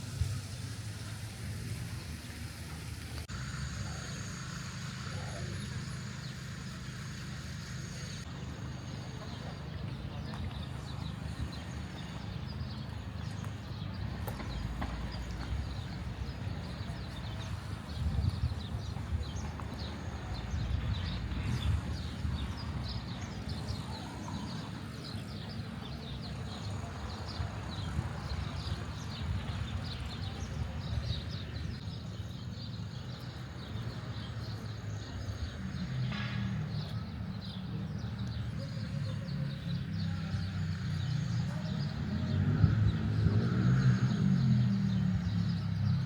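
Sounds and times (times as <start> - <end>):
small birds chirping: 0.0 - 46.0
traffic rumble: 0.0 - 46.0
vehicle passing close: 38.5 - 46.0.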